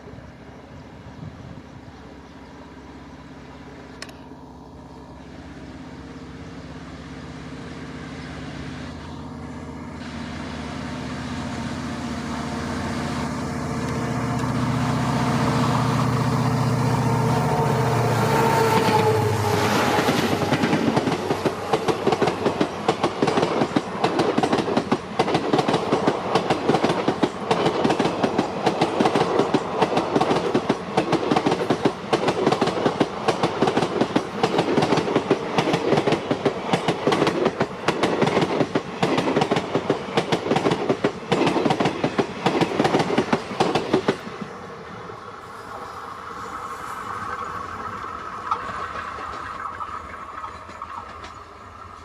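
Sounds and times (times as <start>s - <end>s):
train rumble: 0.0s - 52.0s
train wheels clattering over rail joints: 18.6s - 44.6s, 47.3s - 52.0s.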